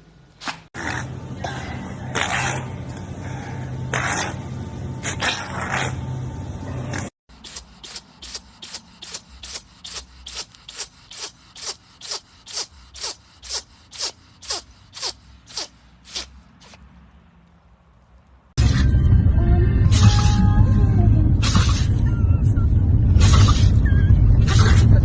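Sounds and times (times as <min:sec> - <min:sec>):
animal sneezing: 0:06.9 - 0:16.8, 0:23.2 - 0:23.8.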